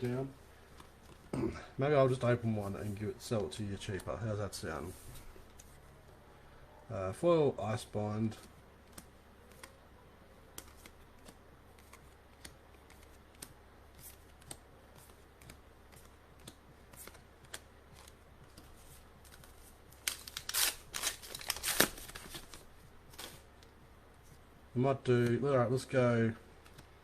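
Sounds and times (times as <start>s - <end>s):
cards and wrapping rustling: 10.5s - 23.5s.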